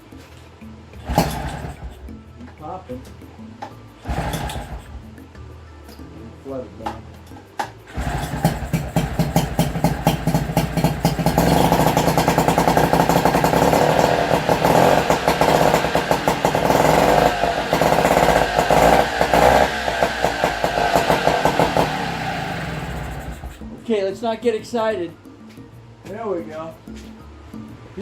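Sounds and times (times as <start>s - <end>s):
outboard motor running: 1.0s - 2.1s, 4.0s - 5.1s, 7.9s - 23.8s.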